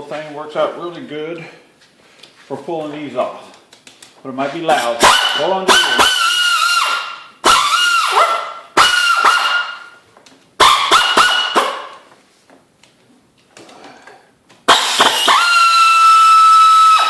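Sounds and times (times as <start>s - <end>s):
power wrench whining: 4.7s - 9.6s, 14.7s - 17.0s.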